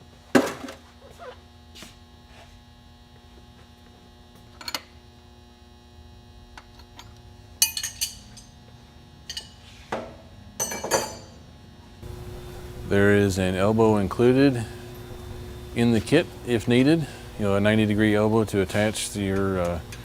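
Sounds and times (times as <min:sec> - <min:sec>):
steady electrical hum: 0:00.0 - 0:20.0
metal tools clinking: 0:06.9 - 0:08.6, 0:10.6 - 0:11.4.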